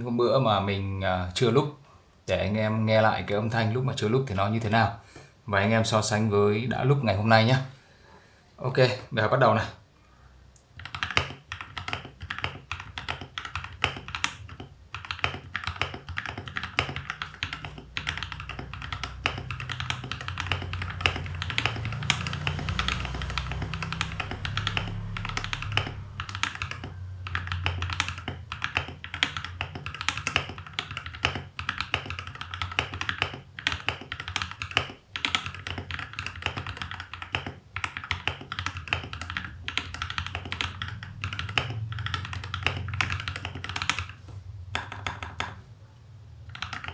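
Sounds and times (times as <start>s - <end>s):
fast typing on mechanical keyboard: 10.8s - 45.6s, 46.5s - 46.9s.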